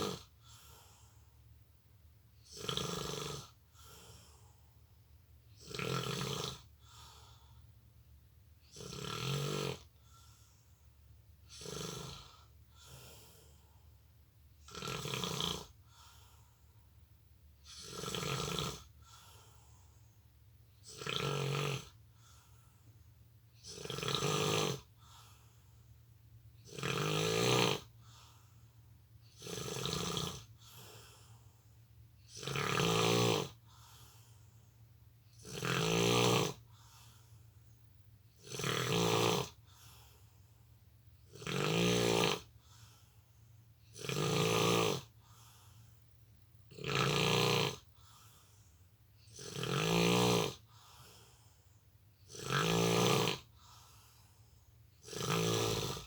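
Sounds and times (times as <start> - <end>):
person snoring: 0.0 - 1.2, 2.4 - 4.5, 5.6 - 7.4, 8.6 - 10.0, 11.5 - 13.6, 14.6 - 16.5, 17.6 - 19.9, 20.8 - 22.5, 23.6 - 25.6, 26.6 - 28.5, 29.3 - 31.4, 32.3 - 34.4, 35.3 - 37.3, 38.4 - 40.2, 41.3 - 43.0, 43.9 - 45.8, 46.7 - 48.6, 49.2 - 51.4, 52.3 - 54.3, 55.0 - 56.0.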